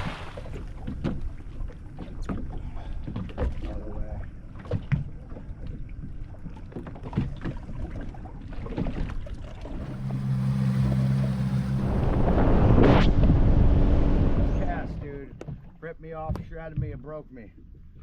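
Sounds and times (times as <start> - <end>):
knocks and clatter in boat: 0.0 - 9.8, 14.7 - 18.0
low hum: 9.4 - 15.9
rush of noise: 9.7 - 15.1.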